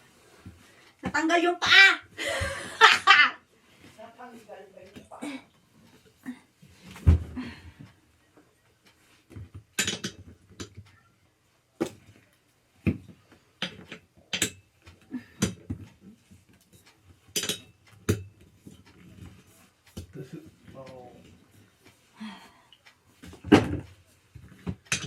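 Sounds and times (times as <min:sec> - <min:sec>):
chair parts knocking and clattering: 0:06.7 - 0:07.9, 0:09.3 - 0:10.9, 0:11.8 - 0:12.2, 0:12.8 - 0:21.5, 0:23.2 - 0:25.0.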